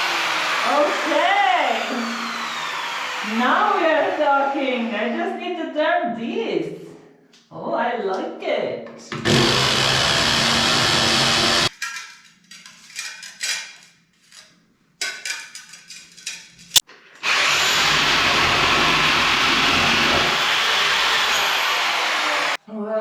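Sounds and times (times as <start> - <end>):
power drill boring: 0.0 - 5.1, 9.2 - 11.7, 17.2 - 22.6
scraping and handling sounds: 11.7 - 17.2.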